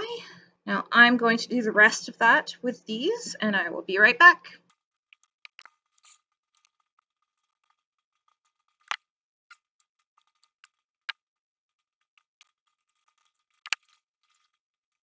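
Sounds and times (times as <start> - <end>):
craft materials clicking and tapping: 4.6 - 15.0.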